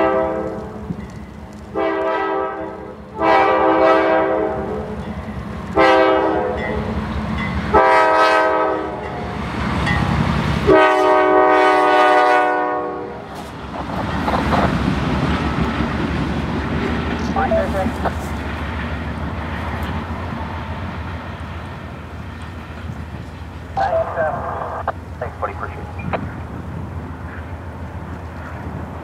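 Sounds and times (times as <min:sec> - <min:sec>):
locomotive air horn blasts: 0:00.0 - 0:00.8, 0:01.7 - 0:05.0, 0:05.8 - 0:06.9, 0:07.7 - 0:09.1, 0:10.6 - 0:13.3
low engine rumble: 0:13.2 - 0:29.0.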